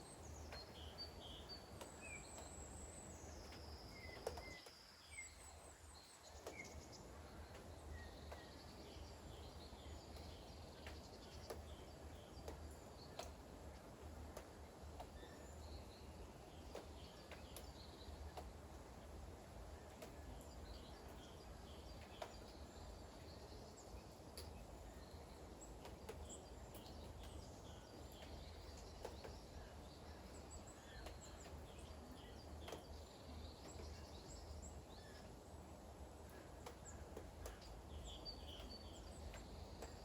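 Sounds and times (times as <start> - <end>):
faint light rain: 0.0 - 40.0
small birds chirping: 0.0 - 40.0.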